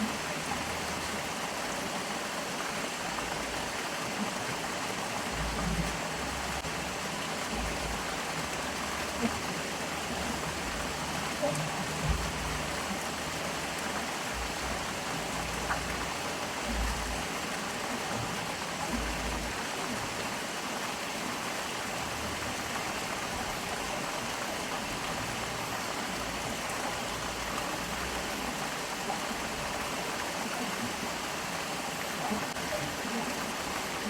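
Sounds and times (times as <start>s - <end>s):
stream flowing: 0.0s - 34.0s.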